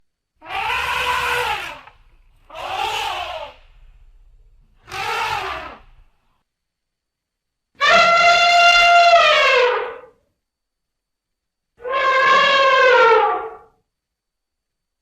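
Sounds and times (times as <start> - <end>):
elephant trumpeting: 0.4 - 1.9, 2.5 - 3.7, 4.8 - 6.0, 7.8 - 10.1, 11.8 - 13.7.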